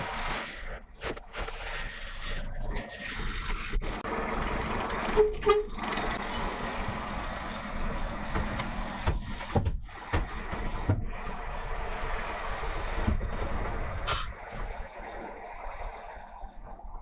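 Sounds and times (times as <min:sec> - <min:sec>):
lorry engine and road rumble: 0:00.0 - 0:17.0
short knocks and rattles: 0:08.1 - 0:11.4.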